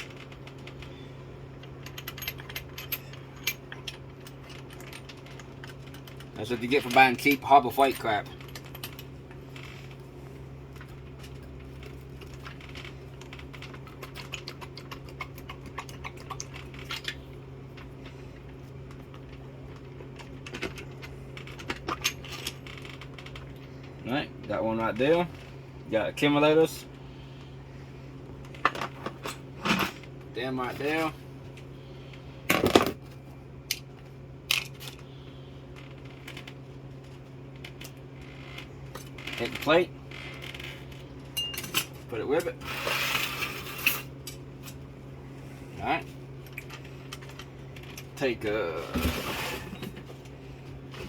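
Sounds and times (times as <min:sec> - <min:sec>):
steady low hum: 0:00.0 - 0:51.0
metal parts clinking: 0:01.8 - 0:06.2.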